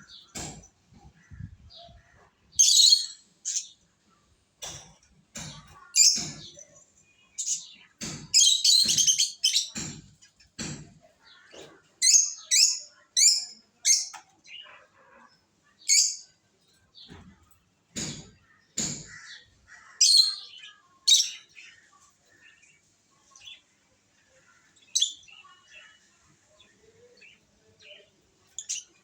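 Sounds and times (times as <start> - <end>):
lovebirds chirping: 0.0 - 4.4.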